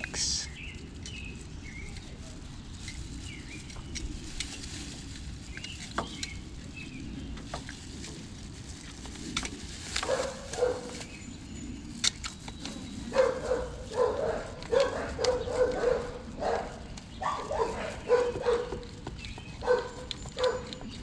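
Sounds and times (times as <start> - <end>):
dog barking: 10.1 - 10.9, 13.1 - 18.9, 19.6 - 20.7.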